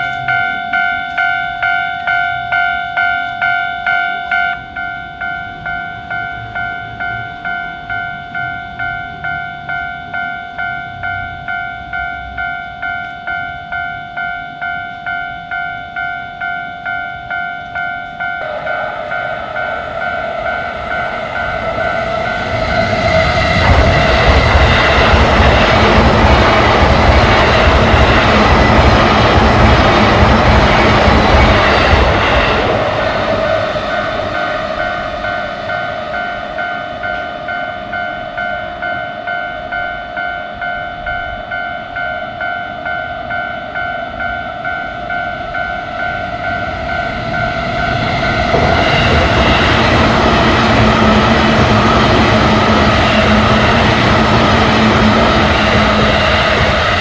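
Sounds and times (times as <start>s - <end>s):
level crossing bell dinging: 0.0s - 23.7s, 34.4s - 46.7s
train rumbling past: 0.0s - 57.0s.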